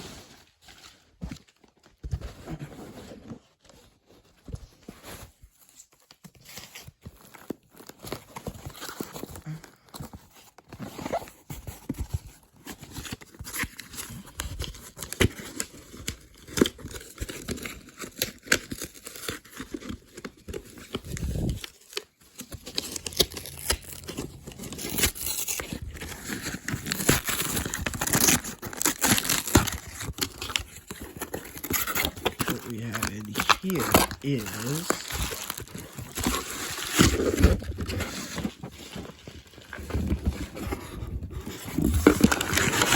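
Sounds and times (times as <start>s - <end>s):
packaging crinkling and rustling: 10.2s - 42.9s
tape and paper tearing: 22.7s - 38.6s.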